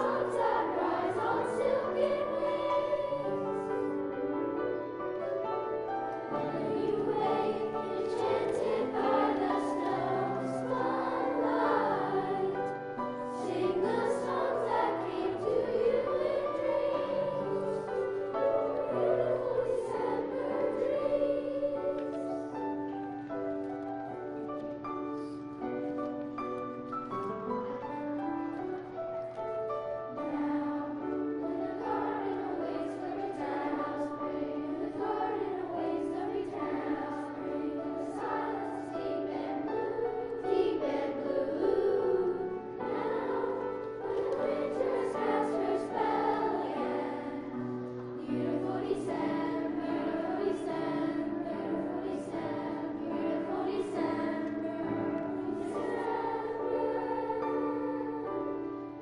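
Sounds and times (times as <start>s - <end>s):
choir singing: 0.0s - 25.8s, 26.4s - 59.0s.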